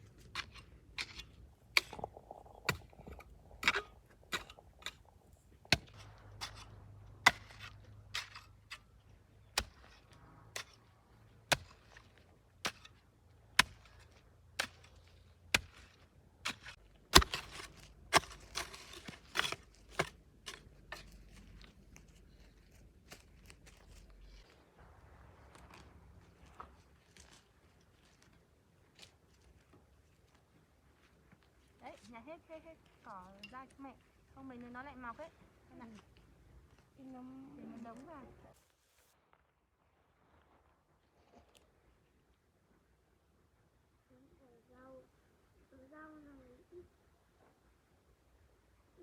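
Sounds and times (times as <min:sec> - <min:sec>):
garden hoe chopping soil: 0:00.0 - 0:10.8, 0:11.4 - 0:21.4.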